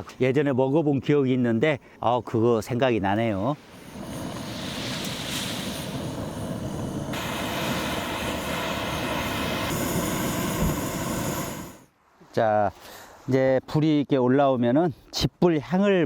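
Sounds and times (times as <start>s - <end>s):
straw fire rushing and crackling: 3.5s - 11.9s.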